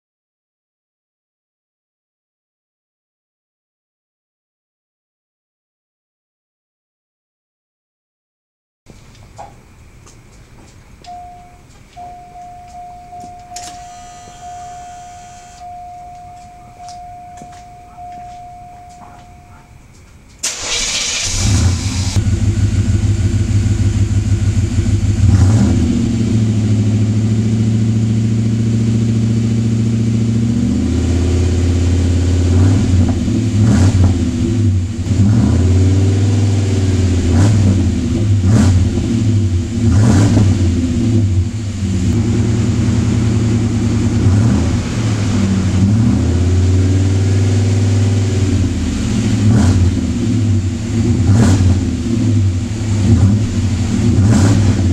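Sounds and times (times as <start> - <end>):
car engine revving: 20.4 - 54.9.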